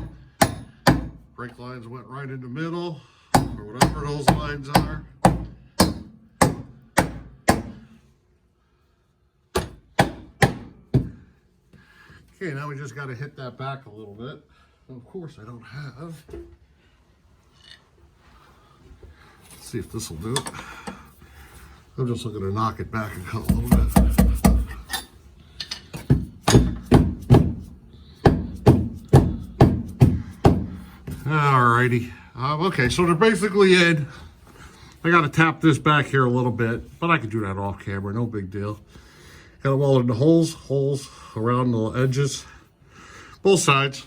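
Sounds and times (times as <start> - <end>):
hammer striking steel: 0.0 - 1.2, 3.4 - 7.8, 9.5 - 11.1, 26.4 - 27.6.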